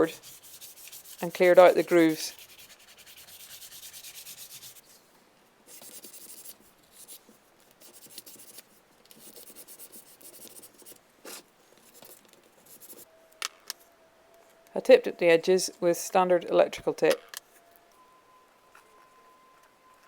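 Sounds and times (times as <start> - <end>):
rubbing and scratching on wood: 0.0 - 4.9, 5.7 - 13.1.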